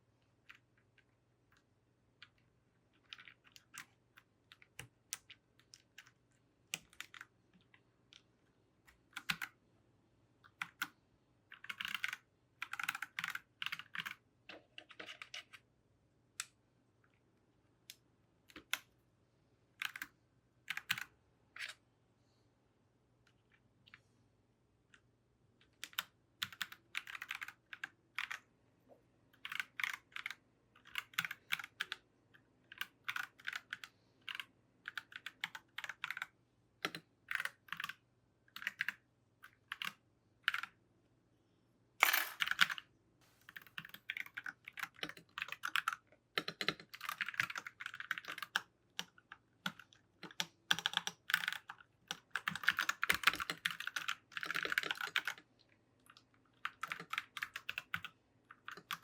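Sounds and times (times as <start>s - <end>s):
mechanical keyboard typing: 3.0s - 7.8s, 8.9s - 9.6s, 10.5s - 10.9s, 11.5s - 15.6s, 19.8s - 21.8s, 25.6s - 28.4s, 29.4s - 32.0s, 32.7s - 40.8s, 42.0s - 42.8s, 43.5s - 55.4s, 56.6s - 59.0s.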